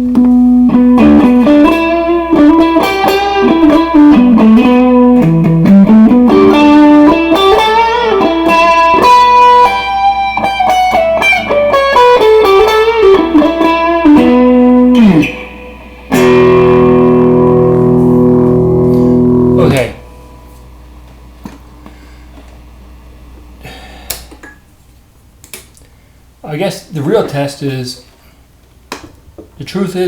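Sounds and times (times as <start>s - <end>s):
guitar chord ringing: 0.0s - 20.6s
electric guitar lead line: 0.0s - 20.7s.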